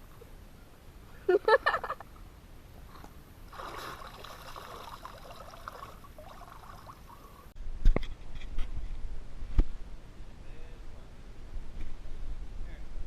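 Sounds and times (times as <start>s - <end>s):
river water trickling: 2.8s - 7.5s.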